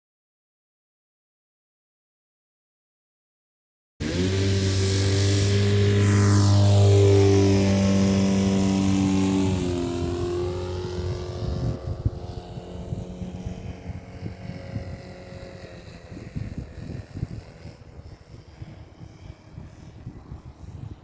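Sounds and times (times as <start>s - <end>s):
model plane motor whining: 4.0s - 21.0s
wind buffeting microphone: 4.6s - 21.0s.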